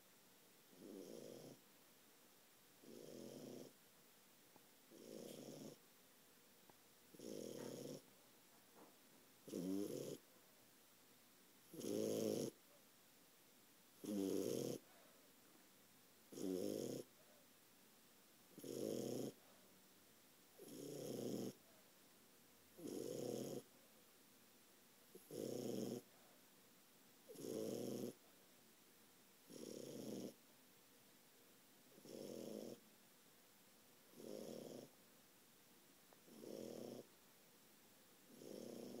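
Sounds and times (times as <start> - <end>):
puppy snoring: 0.7 - 1.6, 2.8 - 3.8, 4.9 - 5.8, 7.1 - 8.1, 9.4 - 10.3, 11.7 - 12.6, 14.0 - 15.0, 16.3 - 17.1, 18.5 - 19.5, 20.6 - 21.7, 22.8 - 23.7, 25.1 - 26.2, 27.3 - 28.3, 29.4 - 30.4, 31.9 - 32.8, 34.1 - 35.0, 36.2 - 37.1, 38.3 - 39.0.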